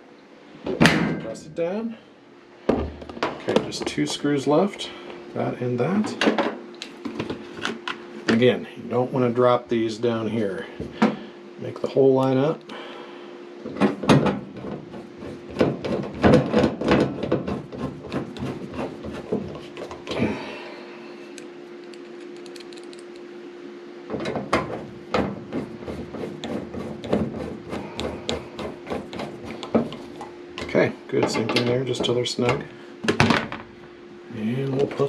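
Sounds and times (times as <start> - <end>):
faint steady hum: 0.0 - 35.0
nut driver clicking and scraping: 21.8 - 23.2.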